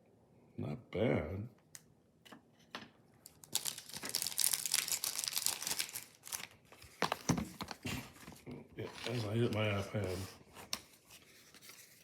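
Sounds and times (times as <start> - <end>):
plastic wrapper crinkling and tearing: 3.2 - 8.3.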